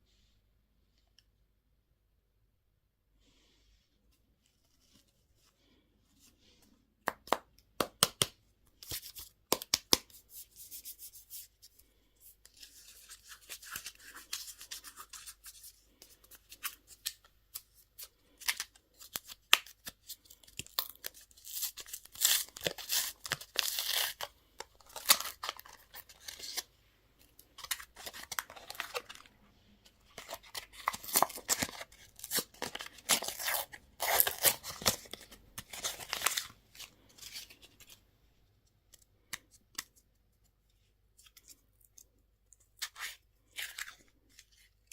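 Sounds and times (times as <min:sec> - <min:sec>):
plastic wrappers crinkling and tearing: 0:12.6 - 0:26.7, 0:27.3 - 0:29.4, 0:30.0 - 0:38.0.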